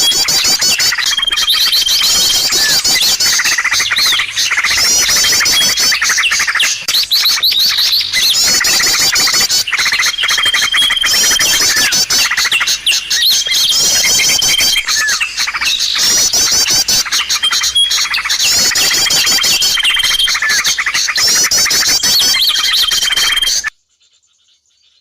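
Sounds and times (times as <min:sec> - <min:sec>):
songbirds chirping and trilling: 0:00.0 - 0:25.0.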